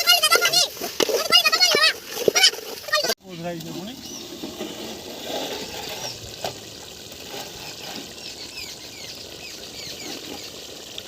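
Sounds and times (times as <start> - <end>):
small birds chirping: 8.1 - 10.6.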